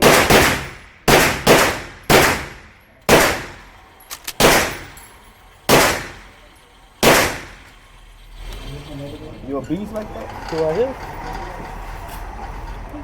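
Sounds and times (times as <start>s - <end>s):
gunshots with echo: 0.0s - 3.7s, 4.4s - 5.0s, 5.7s - 6.4s, 7.0s - 7.7s.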